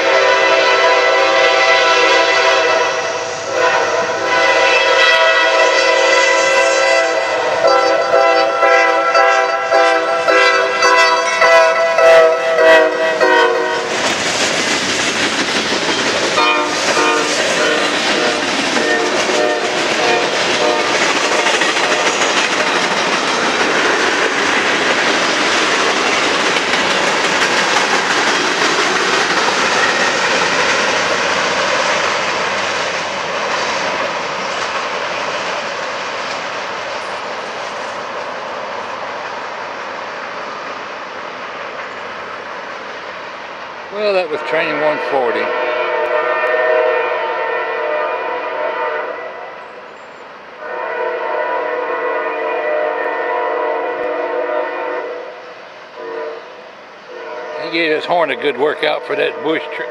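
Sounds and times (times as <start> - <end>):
locomotive air horn blasts: 0.0 - 14.0, 16.4 - 22.2, 44.4 - 49.6, 50.6 - 57.8
freight cars rumbling on rails: 0.0 - 47.7.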